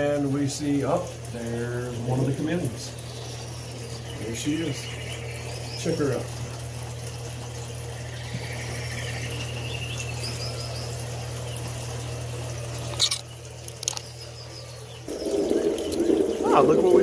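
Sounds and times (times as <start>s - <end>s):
fountain water running: 0.0s - 17.0s
low hum: 2.9s - 13.4s, 14.2s - 17.0s
faint bird chirps: 7.8s - 11.7s.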